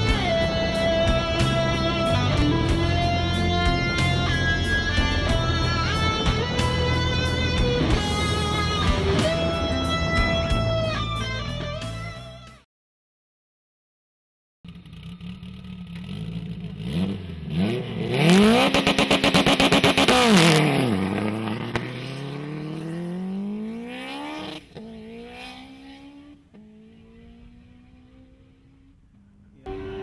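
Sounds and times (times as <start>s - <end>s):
car engine accelerating hard: 14.7s - 30.0s.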